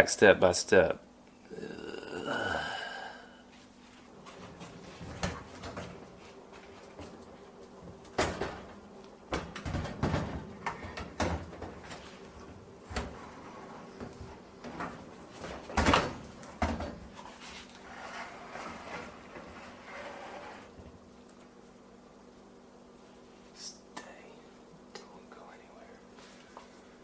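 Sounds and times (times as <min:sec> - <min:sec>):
hardware knocks and clatter: 0:08.1 - 0:12.0.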